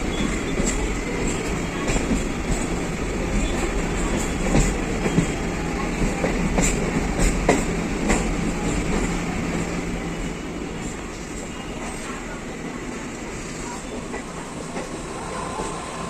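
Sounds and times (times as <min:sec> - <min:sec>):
train wheels rumbling on track: 0:00.0 - 0:16.0.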